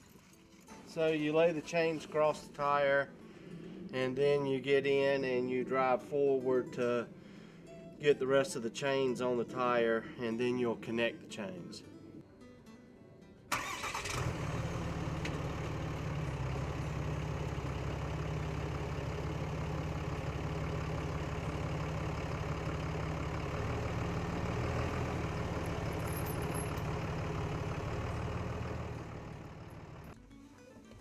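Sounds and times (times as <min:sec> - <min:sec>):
vehicle engine running: 0:13.9 - 0:30.2.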